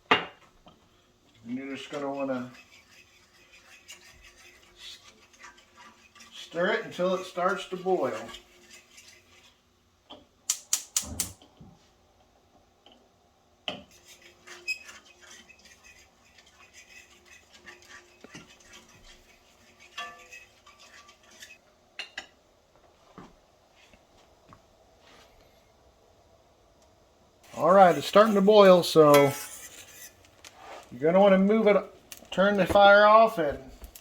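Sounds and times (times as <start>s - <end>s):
sharp knocks on pan: 0.1s - 0.4s
utensil scraping cast iron skillet: 1.3s - 9.7s, 13.8s - 21.6s, 27.4s - 34.0s.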